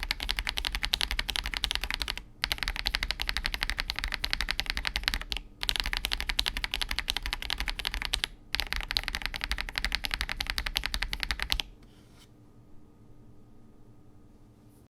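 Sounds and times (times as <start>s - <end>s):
mechanical keyboard typing: 0.0s - 11.7s
faint steady hum: 0.0s - 14.9s.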